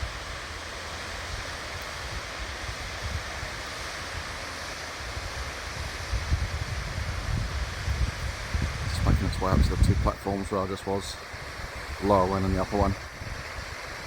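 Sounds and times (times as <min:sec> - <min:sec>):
waterfall rushing: 0:00.0 - 0:14.0
wind buffeting microphone: 0:05.0 - 0:14.0.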